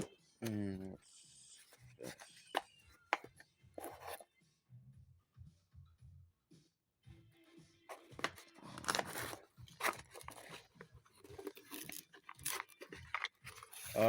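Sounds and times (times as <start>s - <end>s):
package tearing and crinkling: 8.0s - 10.7s, 11.3s - 14.0s.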